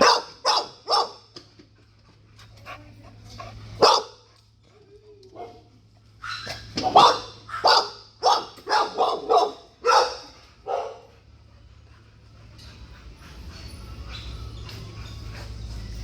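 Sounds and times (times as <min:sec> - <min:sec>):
dog barking: 0:00.0 - 0:01.3, 0:03.8 - 0:04.2, 0:06.2 - 0:11.1.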